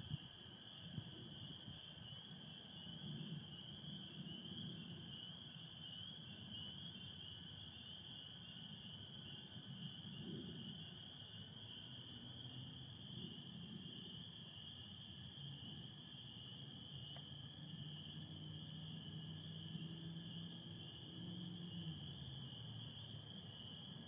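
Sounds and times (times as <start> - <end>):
chorus of peepers calling: 0.1 - 24.0.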